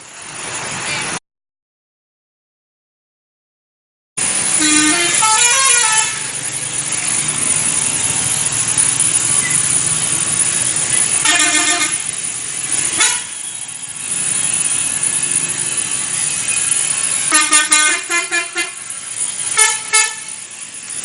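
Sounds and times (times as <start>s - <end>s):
road traffic: 0.0s - 1.2s, 4.2s - 21.0s
musical multi-tone air horn: 4.5s - 6.4s, 11.2s - 12.2s, 12.9s - 13.4s, 17.2s - 20.4s.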